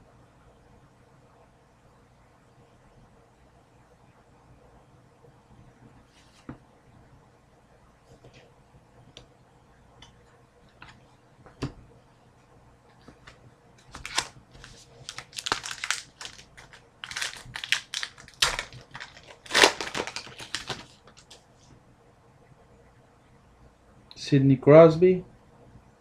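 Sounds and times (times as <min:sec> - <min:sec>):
wrapper tearing and crumpling: 0:13.9 - 0:21.4.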